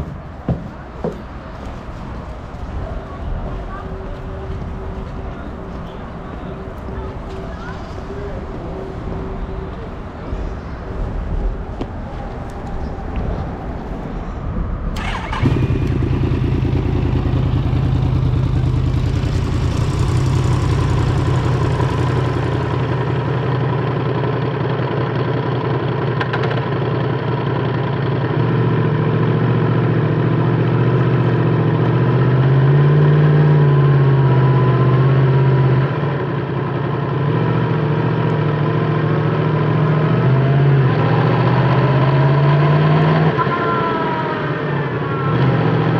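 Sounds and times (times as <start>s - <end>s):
motorcycle engine starting and running: 15.0s - 45.9s.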